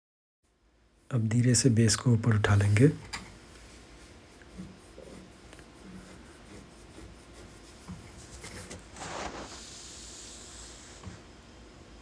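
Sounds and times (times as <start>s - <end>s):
plastic cover scraping: 8.2s - 9.6s.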